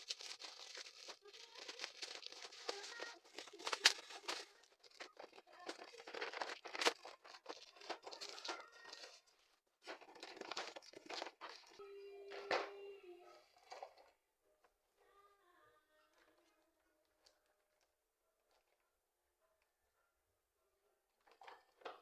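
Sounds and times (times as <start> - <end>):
packaging tearing and crinkling: 0.0 - 9.2.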